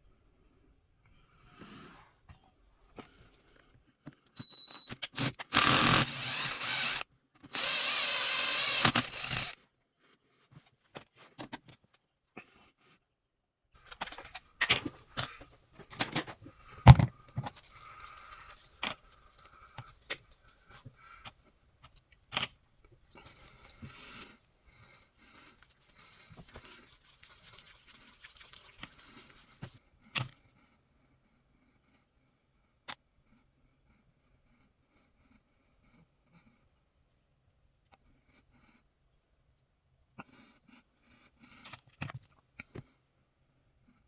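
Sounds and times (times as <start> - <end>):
power tool running: 5.2 - 9.6.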